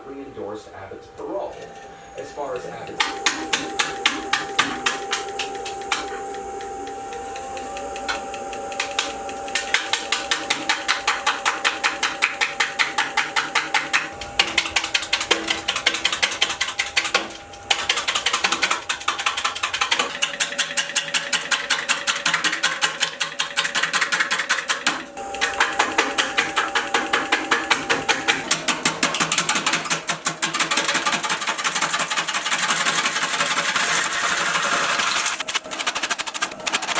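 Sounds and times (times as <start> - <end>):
lathe gouge knocking on wood: 2.5 - 36.9.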